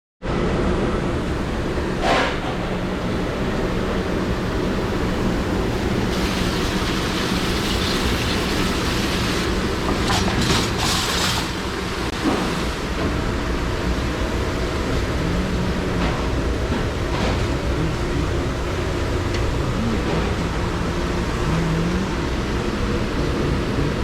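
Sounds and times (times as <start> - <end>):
dishwashing machine running: 0.4 - 24.0
low hum: 12.7 - 24.0.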